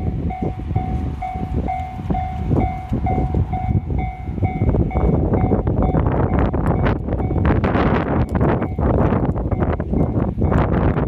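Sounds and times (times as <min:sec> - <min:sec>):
level crossing bell ringing: 0:00.0 - 0:06.5
train rumbling and clacking: 0:00.0 - 0:11.0.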